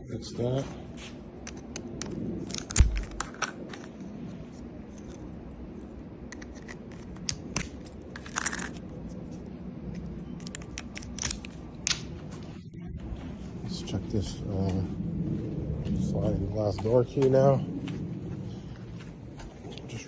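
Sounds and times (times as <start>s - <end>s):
steady low hum: 0.0s - 20.0s
small objects clicking and rattling: 6.3s - 8.9s, 10.4s - 12.0s.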